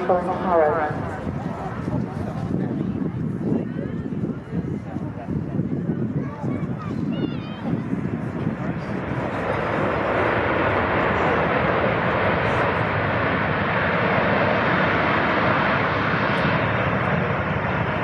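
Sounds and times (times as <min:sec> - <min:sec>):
jet engines rushing: 0:00.0 - 0:18.0.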